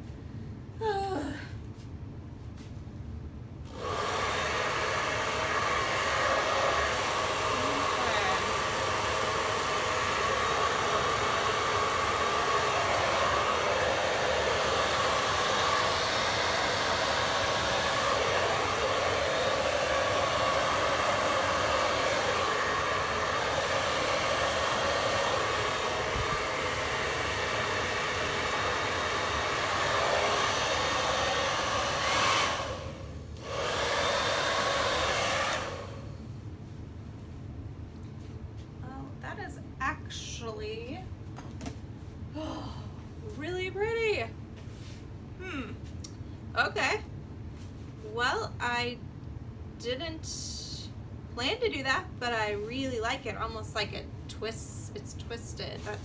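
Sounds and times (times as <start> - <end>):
hair dryer running: 3.7 - 36.3.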